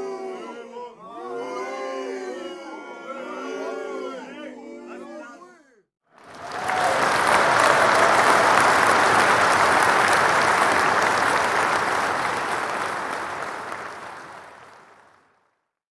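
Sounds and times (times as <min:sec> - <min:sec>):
audience applause: 0:06.2 - 0:15.4.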